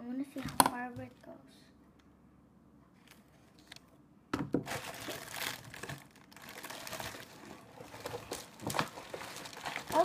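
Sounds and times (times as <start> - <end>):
plastic packaging crinkling: 4.6 - 10.0.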